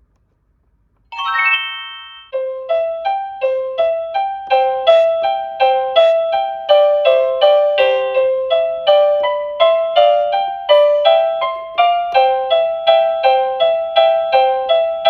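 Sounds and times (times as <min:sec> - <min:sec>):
toy electronic tinkly tune: 0:01.1 - 0:02.4.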